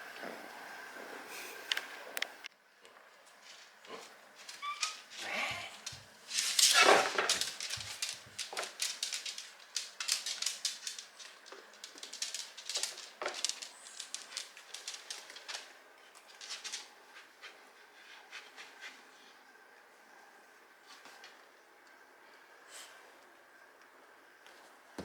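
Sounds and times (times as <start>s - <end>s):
light clicks and scratches: 3.3s - 19.0s.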